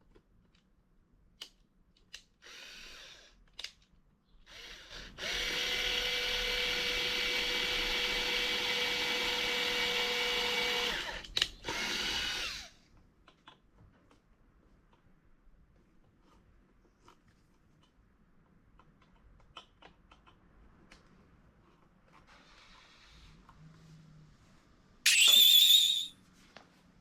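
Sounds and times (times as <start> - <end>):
power drill running: 4.5 - 12.7
drill click: 25.1 - 26.1.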